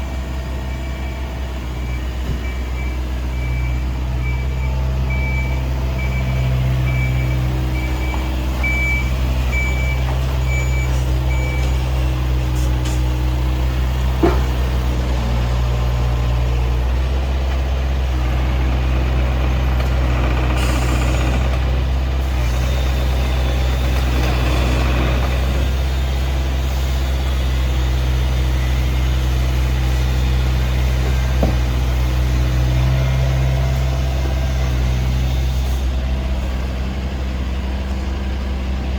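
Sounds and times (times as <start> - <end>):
diesel engine running: 0.0 - 38.9
sharp knock: 31.4 - 31.7.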